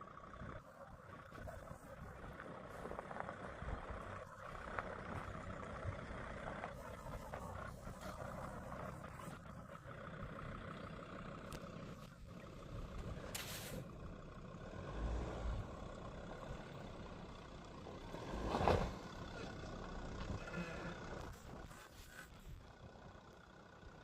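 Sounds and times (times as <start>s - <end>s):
diesel engine rumbling: 0.0s - 24.0s
short hiss: 13.3s - 13.8s.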